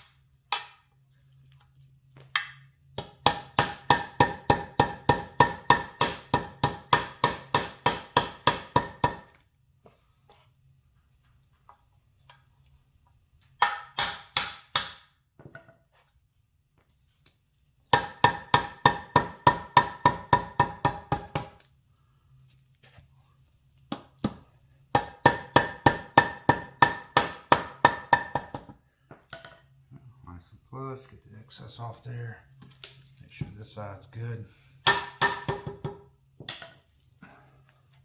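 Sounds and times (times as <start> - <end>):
hammer striking metal: 3.0 - 9.2, 13.6 - 15.0, 34.8 - 36.0.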